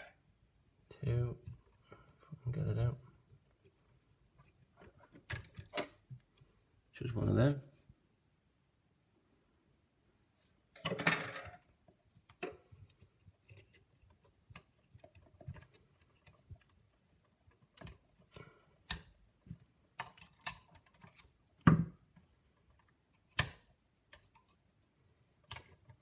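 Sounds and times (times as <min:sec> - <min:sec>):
lock parts clicking and tapping: 0:17.4 - 0:24.5
sharp metallic clink: 0:23.4 - 0:24.2.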